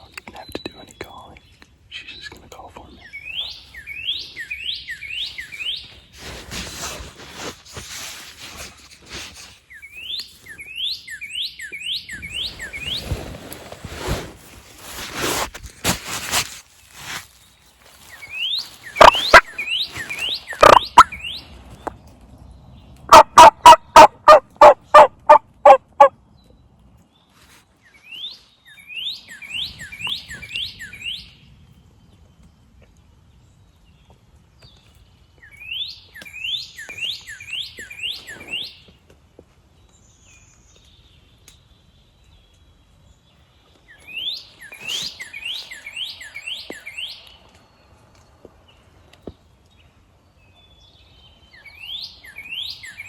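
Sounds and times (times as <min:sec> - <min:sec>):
songbird chirping: 0:00.0 - 0:06.4, 0:09.4 - 0:13.7, 0:16.7 - 0:53.0
wild turkey yelping: 0:19.0 - 0:21.4, 0:23.1 - 0:26.1.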